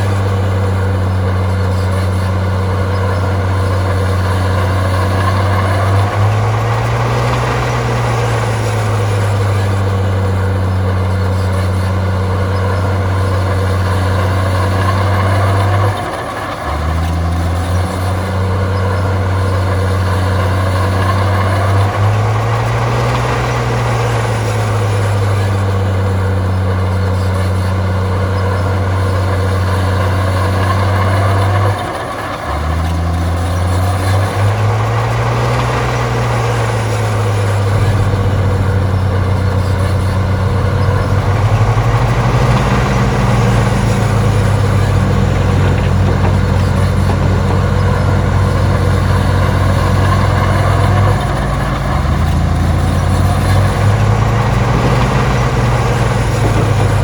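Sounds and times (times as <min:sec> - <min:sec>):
heavy diesel engine running: 0:00.0 - 0:57.0
heavy clattering: 0:32.7 - 0:57.0.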